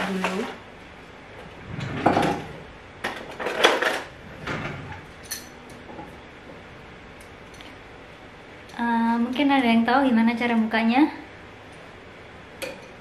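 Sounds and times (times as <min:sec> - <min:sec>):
clattering kitchen things: 0:00.0 - 0:00.6, 0:01.7 - 0:06.2.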